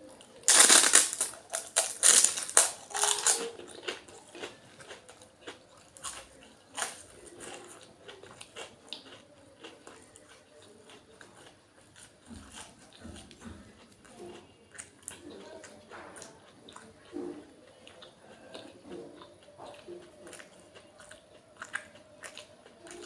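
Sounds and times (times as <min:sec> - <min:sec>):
person chewing: 0:00.0 - 0:23.0
crunching crisp shells: 0:00.4 - 0:10.3.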